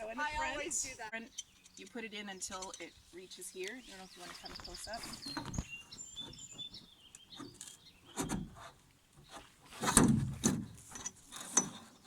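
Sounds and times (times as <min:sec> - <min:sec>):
wooden knocks and rubbing: 0:05.0 - 0:12.0.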